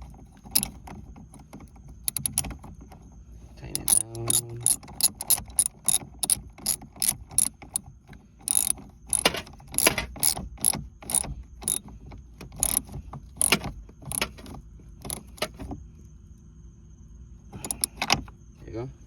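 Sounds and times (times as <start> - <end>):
ratchet wrench clicking: 0.5 - 0.8, 2.0 - 2.6, 3.7 - 7.8, 8.4 - 11.9, 12.6 - 14.4, 17.6 - 18.2.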